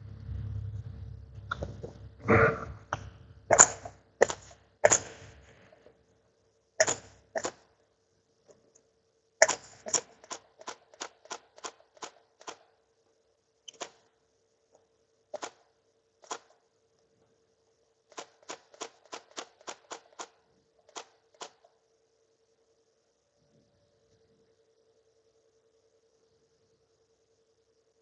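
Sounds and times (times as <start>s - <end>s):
faint steady hum: 0.0s - 28.0s
electric stapler snapping: 3.6s - 5.2s, 6.8s - 7.6s.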